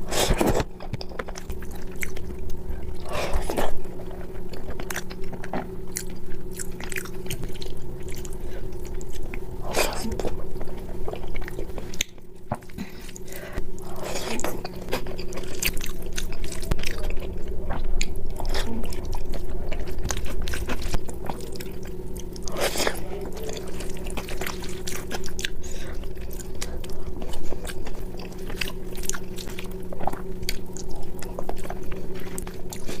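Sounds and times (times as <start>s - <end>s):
steady low hum: 0.0s - 33.0s
wet chewing sounds: 0.1s - 33.0s.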